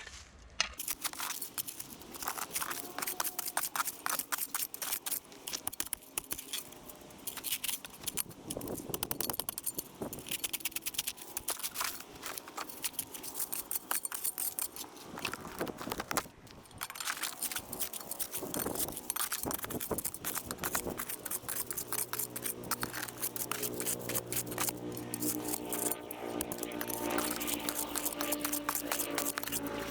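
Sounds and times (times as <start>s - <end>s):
digging in gravelly soil: 0.0s - 29.9s.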